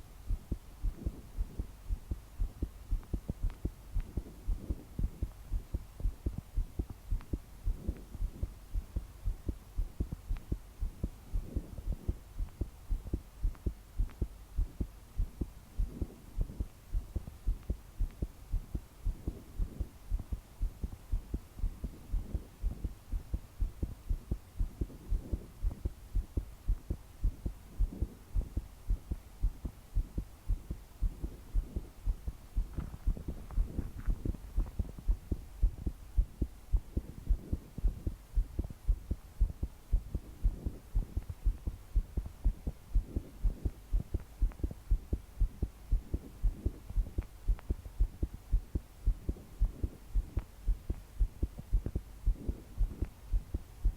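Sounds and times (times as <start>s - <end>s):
fast pounding heartbeat: 0.0s - 53.9s.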